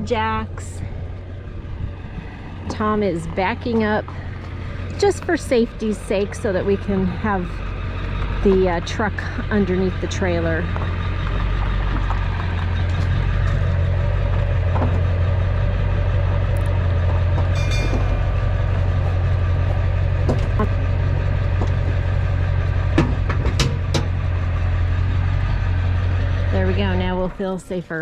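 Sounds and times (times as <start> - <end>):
diesel engine running at low revs: 0.0 - 28.0
high metallic ring: 17.5 - 18.6.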